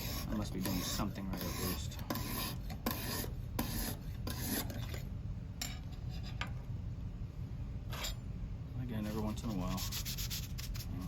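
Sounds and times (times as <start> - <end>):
knife scraping sharpening stone: 0.0 - 5.0.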